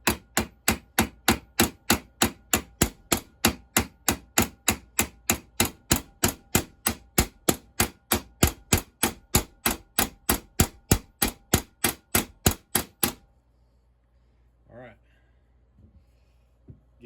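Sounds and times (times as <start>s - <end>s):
hammer striking steel: 0.0s - 13.2s.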